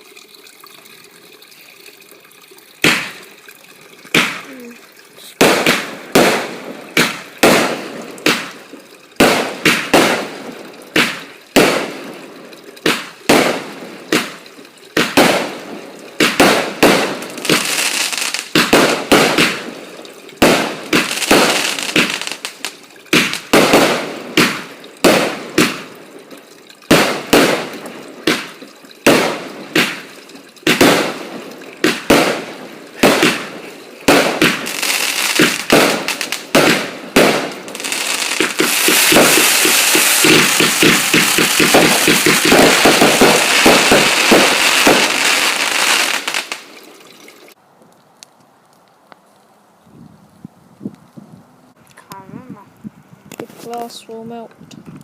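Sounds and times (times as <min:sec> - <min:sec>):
fireworks bangs: 0:02.8 - 0:03.2, 0:04.1 - 0:26.0, 0:26.9 - 0:47.0
fireworks crackling: 0:02.8 - 0:49.2.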